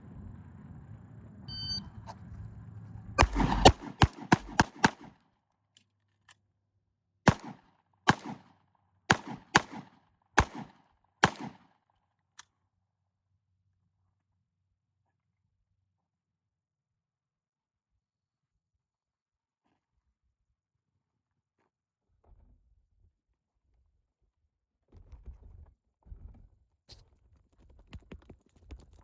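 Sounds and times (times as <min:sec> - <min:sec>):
shot timer beep: 0:01.5 - 0:01.9
pistol shots: 0:03.2 - 0:05.1, 0:07.3 - 0:08.5, 0:09.1 - 0:11.6.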